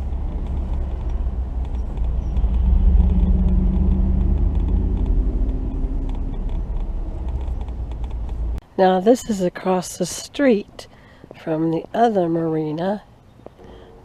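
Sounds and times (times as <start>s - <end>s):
faint engine hum: 0.0s - 8.6s
car road and engine rumble: 0.0s - 8.7s.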